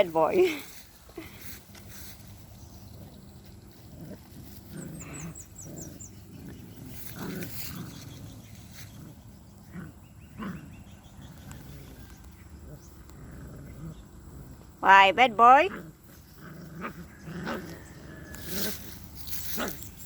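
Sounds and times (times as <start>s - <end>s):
puppy growling and grunting: 2.8s - 14.8s, 15.4s - 18.9s.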